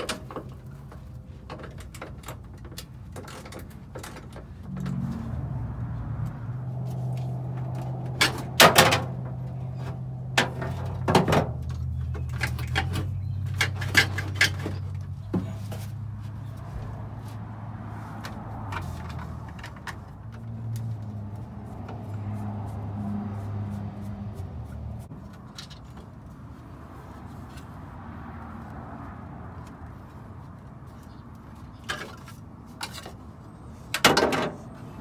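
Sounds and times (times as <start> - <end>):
metallic clicks and rattles of tools: 0.0 - 5.0, 25.3 - 26.1.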